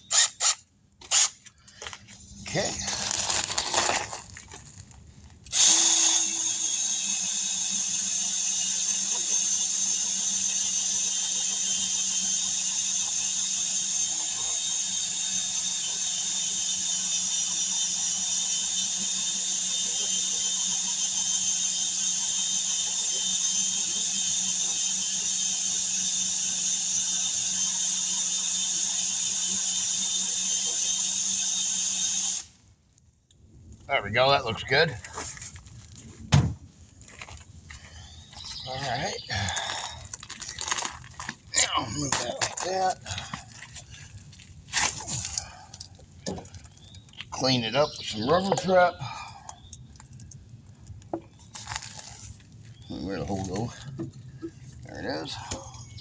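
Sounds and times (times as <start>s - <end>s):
power buffing tool on rubber: 5.5s - 32.5s, 38.4s - 45.4s.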